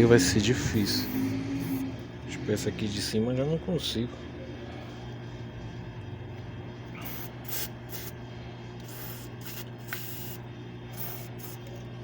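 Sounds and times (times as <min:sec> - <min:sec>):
aerosol spray hissing bursts: 0:07.0 - 0:08.2, 0:08.8 - 0:11.6.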